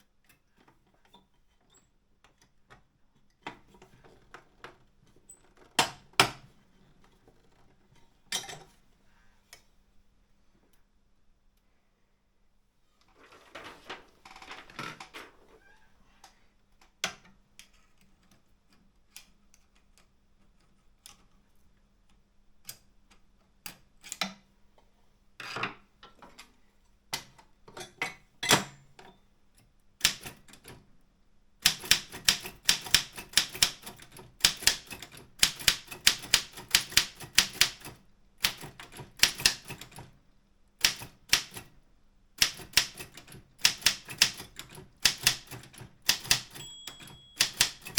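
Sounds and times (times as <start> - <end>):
typewriter keystrokes: 30.0 - 30.8, 31.6 - 40.2, 40.8 - 41.8, 42.4 - 47.9.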